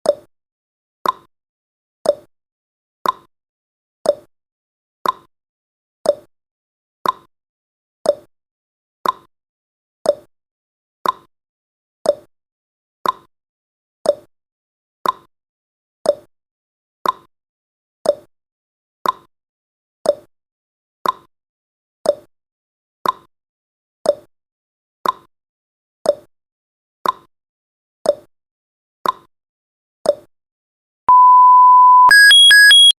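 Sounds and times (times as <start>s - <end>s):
steady high beep: 31.1s - 32.9s
timer ticking: 31.1s - 32.9s.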